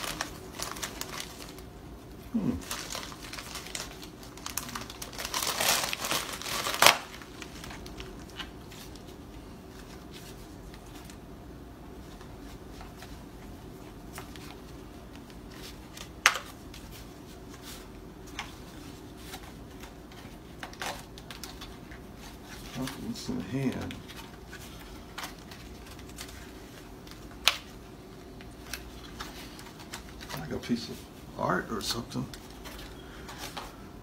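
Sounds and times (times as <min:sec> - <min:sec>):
packaging crinkling and tearing: 0:00.0 - 0:01.7, 0:02.3 - 0:09.1, 0:19.2 - 0:30.8.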